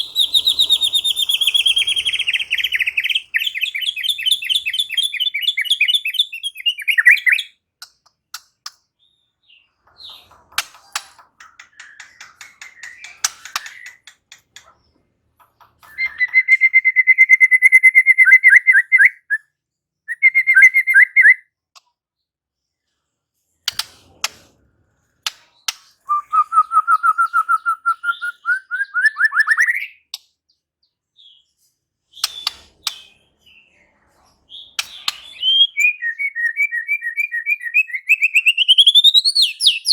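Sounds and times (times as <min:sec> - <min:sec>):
songbird trilling: 0:00.0 - 0:07.5.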